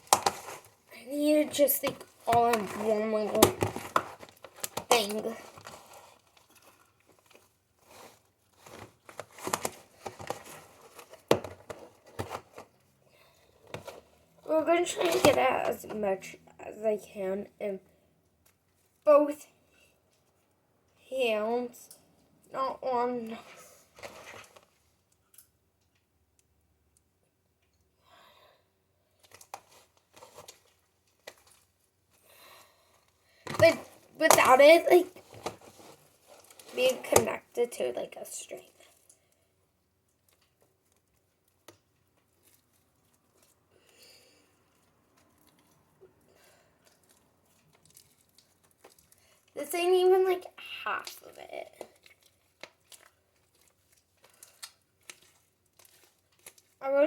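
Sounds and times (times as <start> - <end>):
slime squelching: 0.0 - 11.4, 29.1 - 57.0
slime crackling and popping: 44.8 - 56.9.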